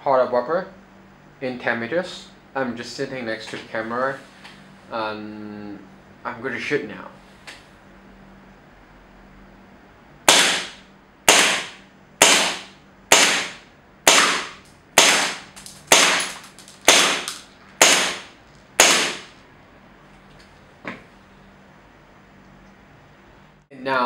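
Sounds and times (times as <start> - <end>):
airsoft gun shots: 10.3 - 19.4.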